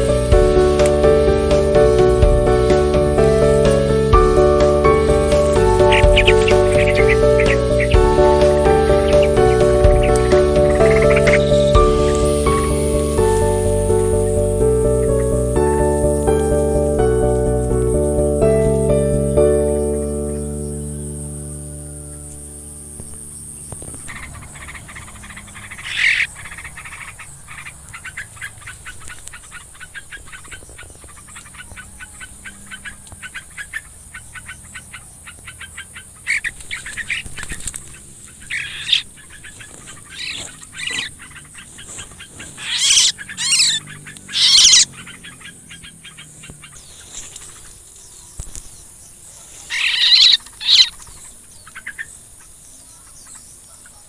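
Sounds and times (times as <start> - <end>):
birds chirping: 0.0 - 54.0
crickets droning: 0.0 - 54.0
loud harsh bird calls: 2.9 - 15.4, 23.0 - 48.4, 49.2 - 54.0.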